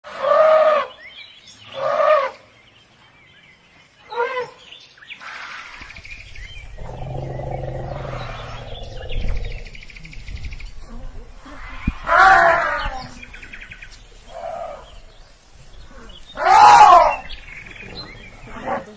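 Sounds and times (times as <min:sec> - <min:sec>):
birds chirping faintly: 0:00.8 - 0:18.9
elephant long low call: 0:06.4 - 0:10.4
elephant trumpeting: 0:06.8 - 0:09.6.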